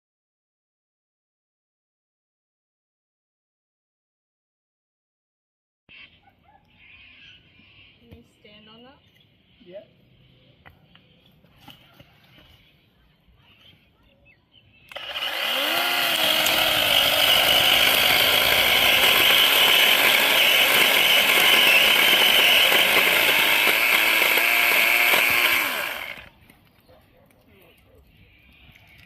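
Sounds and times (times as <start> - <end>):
small engine tool running: 14.9 - 26.4.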